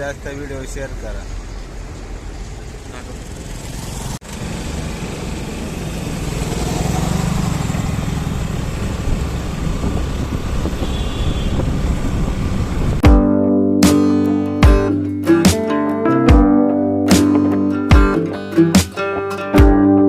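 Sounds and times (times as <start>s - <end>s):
vehicle road and wind noise: 0.0s - 13.1s.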